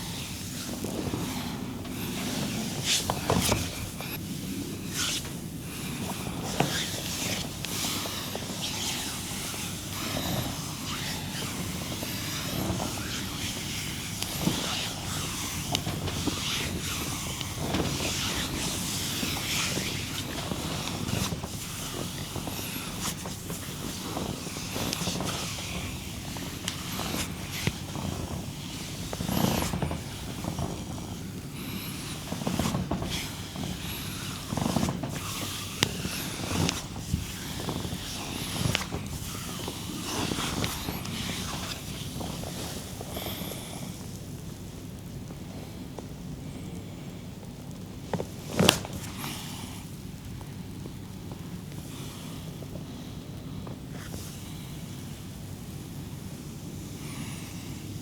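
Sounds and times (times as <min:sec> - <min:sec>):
hands rubbing skin: 0:00.0 - 0:43.8.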